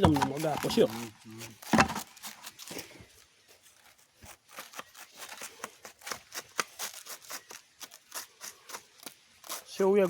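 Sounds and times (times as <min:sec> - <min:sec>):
feed crunching and scraping by hand: 0:00.0 - 0:10.0.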